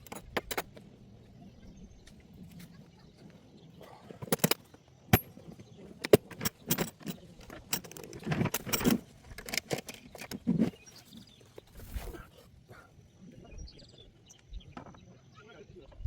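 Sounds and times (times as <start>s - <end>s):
metal hand tools clinking: 4.2s - 5.4s, 6.0s - 10.4s.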